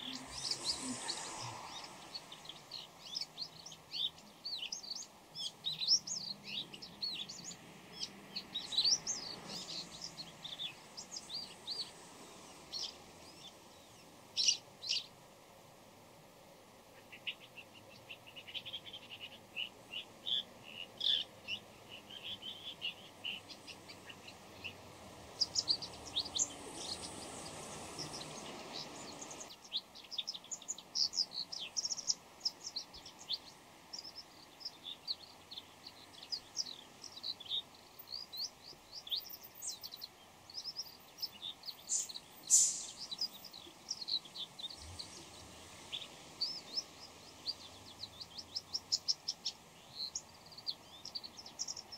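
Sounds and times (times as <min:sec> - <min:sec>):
rushing hiss: 0:00.0 - 0:02.4, 0:25.5 - 0:29.5, 0:41.9 - 0:43.3.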